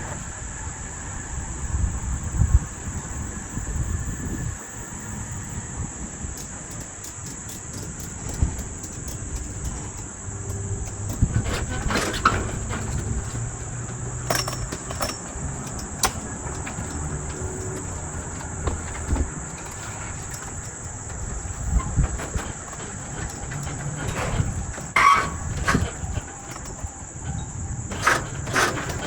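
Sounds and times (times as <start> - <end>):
insects chirring: 0.0 - 29.0
sharp knocks and clanks: 6.4 - 29.0.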